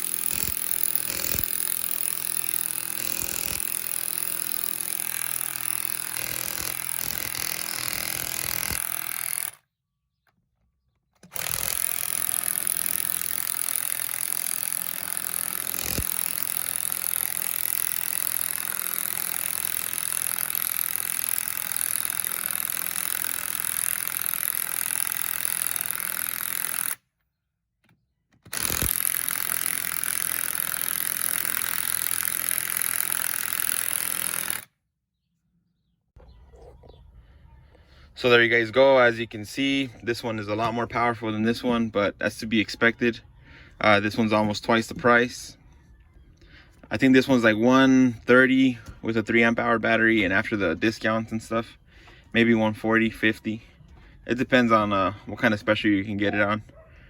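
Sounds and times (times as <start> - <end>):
impact wrenches hammering: 11.2 - 27.0.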